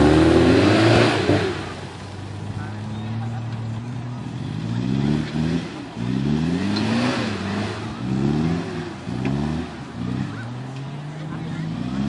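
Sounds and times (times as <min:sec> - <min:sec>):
vehicle engine revving: 0:00.0 - 0:12.0.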